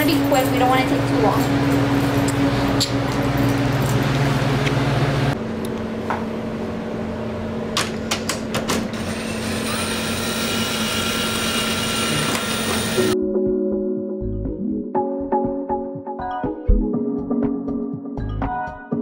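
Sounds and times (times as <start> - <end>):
low machine hum: 0.0 - 13.2.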